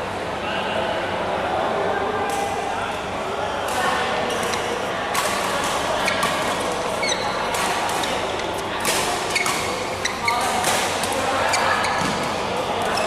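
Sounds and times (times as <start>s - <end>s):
rackets hitting shuttlecock: 3.6s - 13.0s
court shoes squeaking: 3.7s - 13.0s.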